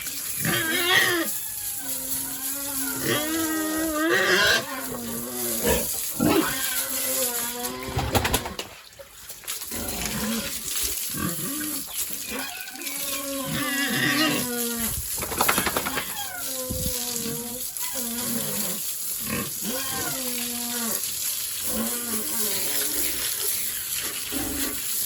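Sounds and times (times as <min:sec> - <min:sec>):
pigs oinking: 0:00.2 - 0:08.6, 0:09.6 - 0:25.0.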